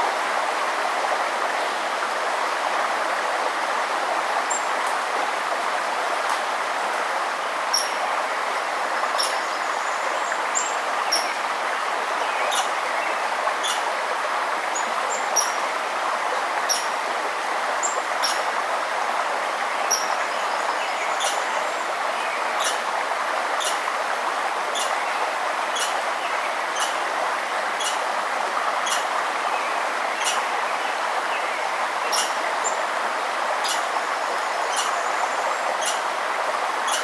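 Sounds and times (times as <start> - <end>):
stream running: 0.0 - 37.0
bird chirping: 35.8 - 36.0.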